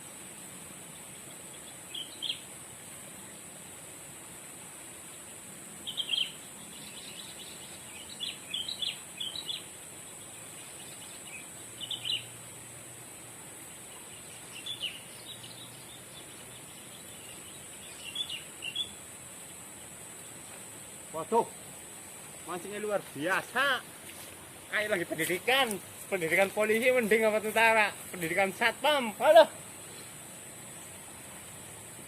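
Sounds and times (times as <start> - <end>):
steady background hiss: 0.0 - 32.0
bird chirping: 1.2 - 2.5, 5.8 - 12.4, 13.9 - 21.5.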